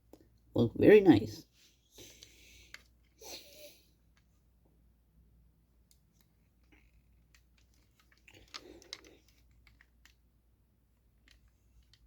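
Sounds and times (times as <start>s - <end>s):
rustling: 6.0s - 12.0s.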